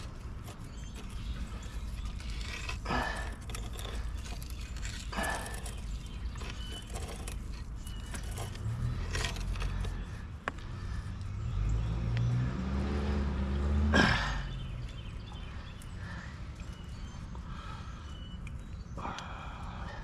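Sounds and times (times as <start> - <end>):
vehicle engine revving up: 8.4 - 10.0, 10.8 - 14.8.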